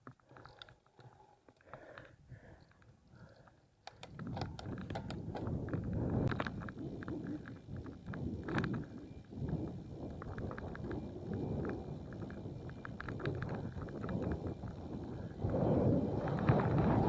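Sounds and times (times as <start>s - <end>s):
bicycle clicks and rattles: 0.0s - 17.0s
wind rumble: 4.1s - 17.0s.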